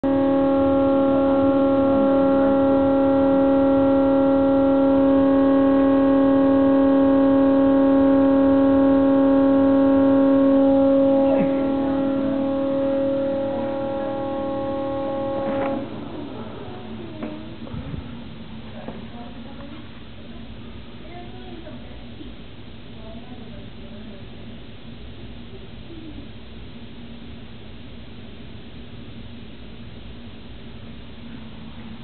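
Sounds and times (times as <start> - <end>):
refrigerator howling: 0.0 - 19.4.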